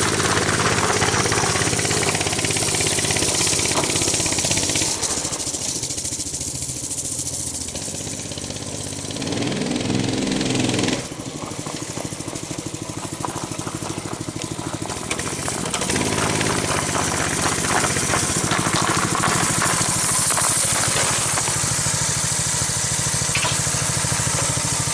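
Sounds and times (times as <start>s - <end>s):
small engine revving: 0.0s - 24.9s.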